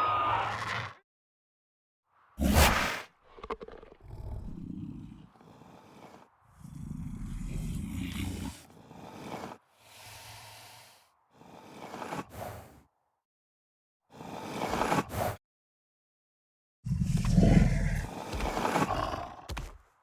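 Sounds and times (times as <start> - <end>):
low breathy creature growls: 3.3 - 12.9, 16.9 - 19.8.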